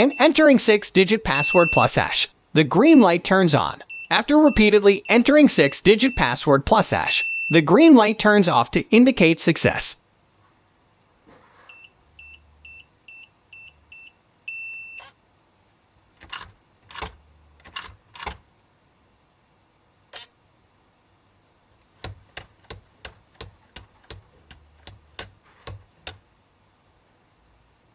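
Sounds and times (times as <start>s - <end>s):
keypad beeps: 0.0s - 0.4s, 1.3s - 2.0s, 3.9s - 6.3s, 11.7s - 15.1s
sharp clicks and taps: 21.8s - 26.2s.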